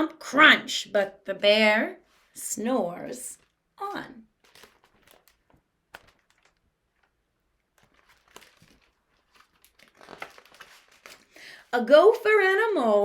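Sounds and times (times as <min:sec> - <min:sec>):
paper pages turning: 0:04.3 - 0:11.4.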